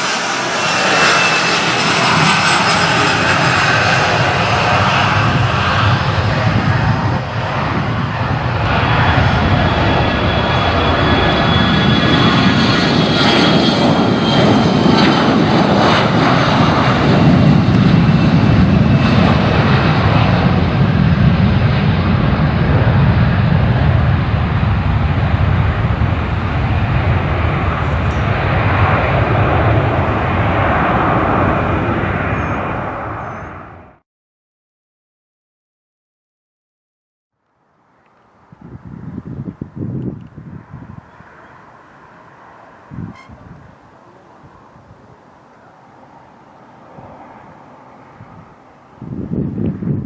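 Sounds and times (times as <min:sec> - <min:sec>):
aircraft engine whining: 0:00.0 - 0:34.0.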